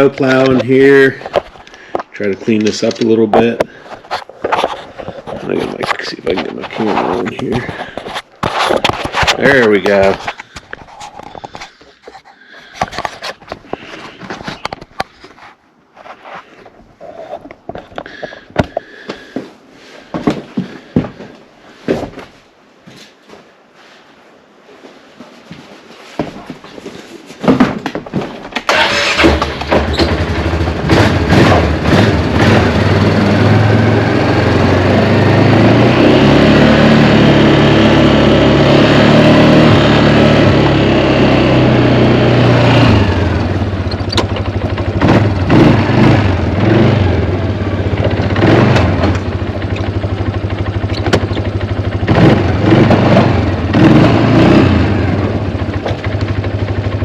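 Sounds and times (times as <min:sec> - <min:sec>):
engine knocks: 0:27.6 - 0:34.0, 0:43.4 - 0:46.7, 0:47.9 - 0:54.4, 0:55.2 - 0:57.0
clicks before engine start: 0:28.6 - 0:30.3
vehicle engine revving and idling: 0:28.7 - 0:57.0.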